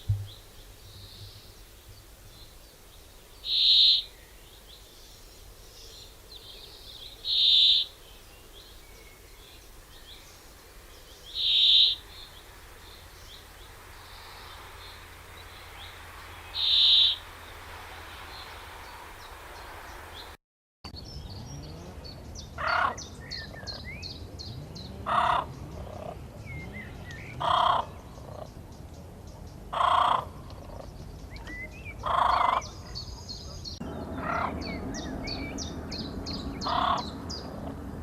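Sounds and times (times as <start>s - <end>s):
bird calling: 3.4s - 4.4s, 7.1s - 8.0s, 11.1s - 20.3s, 29.7s - 37.8s
faint bird chirps: 3.4s - 20.3s.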